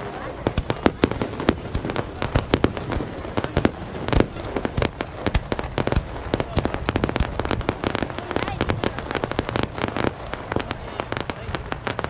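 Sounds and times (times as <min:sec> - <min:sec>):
fireworks crackling: 0:00.0 - 0:12.0
fireworks cracks and bangs: 0:00.0 - 0:12.0.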